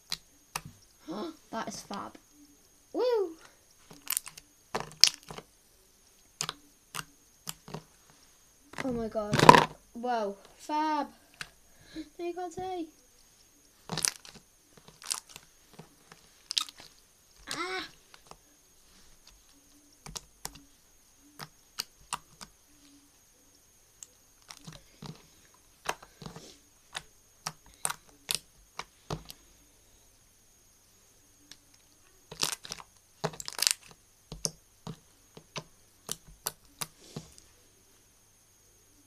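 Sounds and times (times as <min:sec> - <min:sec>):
slime clicking and popping: 0:04.0 - 0:05.4, 0:06.4 - 0:07.8, 0:13.9 - 0:15.4, 0:32.3 - 0:36.9.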